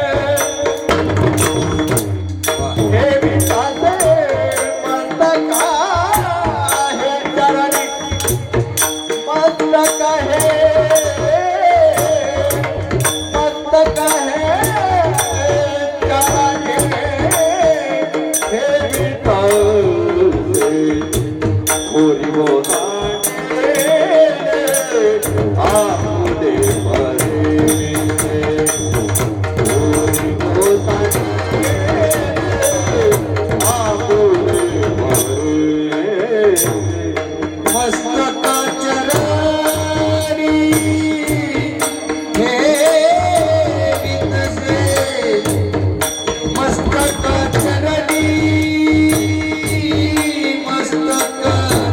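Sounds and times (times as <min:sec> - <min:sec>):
person singing: 0:00.0 - 0:01.9, 0:02.5 - 0:51.9
harmonium drone: 0:00.0 - 0:51.9.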